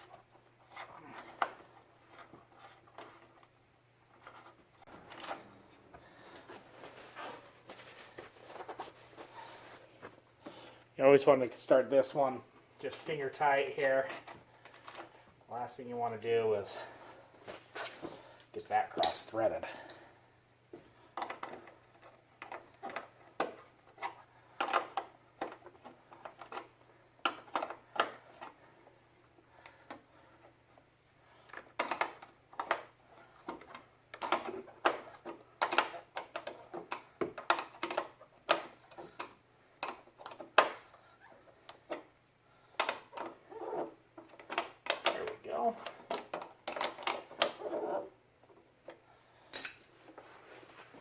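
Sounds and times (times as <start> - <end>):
metallic clicks and taps of tools: 49.5 - 49.9.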